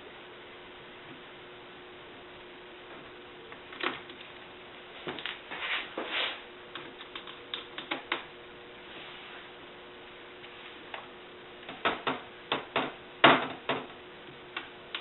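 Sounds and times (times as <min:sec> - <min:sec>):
short scrapes: 0:05.5 - 0:06.4.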